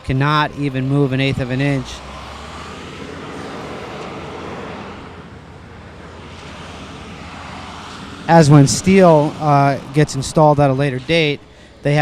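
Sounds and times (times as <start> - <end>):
distant machinery and traffic rumble: 0.0 - 12.0.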